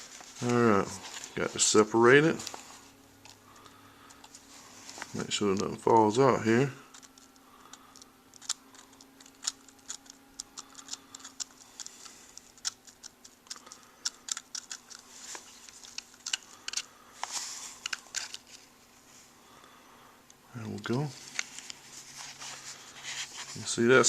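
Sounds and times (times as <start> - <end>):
faint steady hum: 0.0 - 24.0
small clicks taps and scrapes: 6.9 - 18.6.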